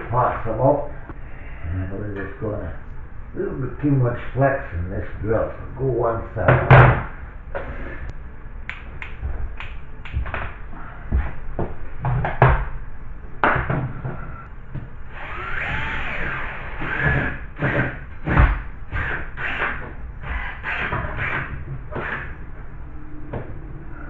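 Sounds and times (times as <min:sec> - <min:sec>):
power drill boring through wood: 0:15.1 - 0:22.3.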